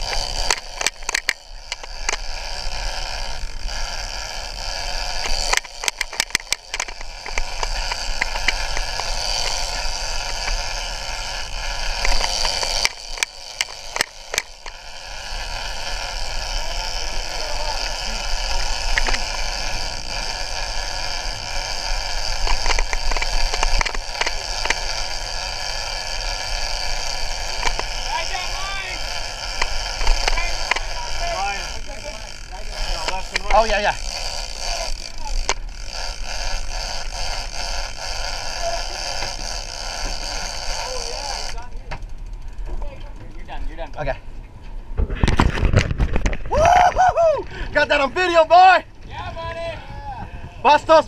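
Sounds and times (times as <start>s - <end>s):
fishing reel clicking: 0.0s - 44.1s
boat engine running: 0.0s - 44.6s
water around boat: 0.0s - 51.0s.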